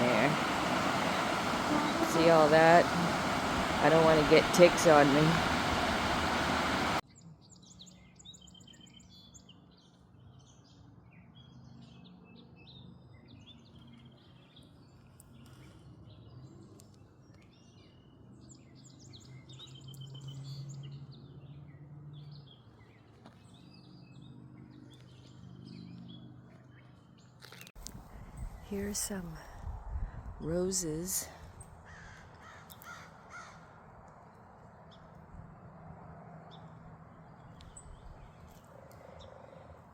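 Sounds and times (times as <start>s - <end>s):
low steady hum: 0.0s - 7.0s
songbirds singing and chirping: 0.0s - 30.0s.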